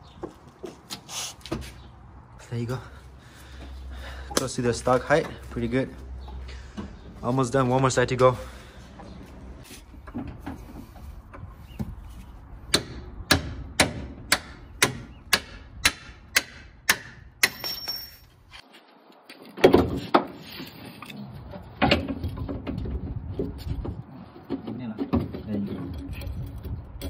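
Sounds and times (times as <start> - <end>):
sharp metal-on-metal knocks: 12.7 - 18.3.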